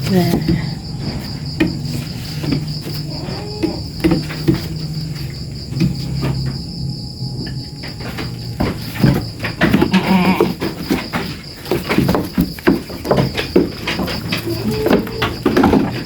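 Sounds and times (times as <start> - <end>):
low hum: 0.0 - 9.9
crickets chirring: 0.0 - 16.0
knocks and thuds: 0.0 - 16.0.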